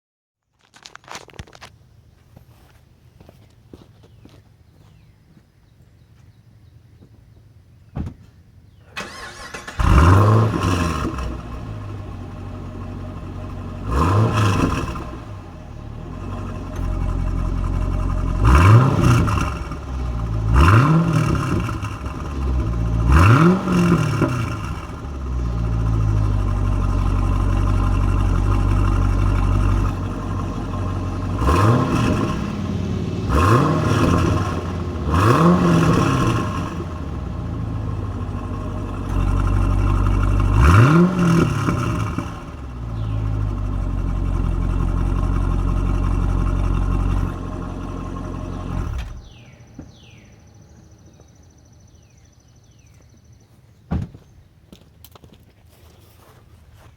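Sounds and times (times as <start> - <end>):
car exhaust idling and revving: 5.9 - 50.4.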